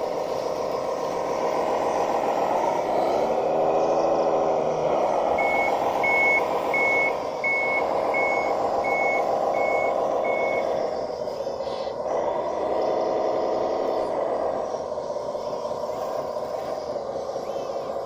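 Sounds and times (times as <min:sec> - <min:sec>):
model diesel engine running: 0:00.0 - 0:18.0
reversing alarm beeping: 0:05.3 - 0:10.9.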